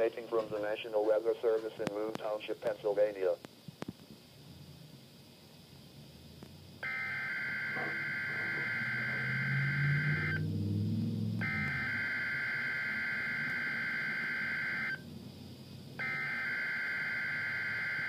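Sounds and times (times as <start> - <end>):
buzzing two-tone data bursts: 6.8 - 10.4, 11.4 - 15.0, 16.0 - 18.0.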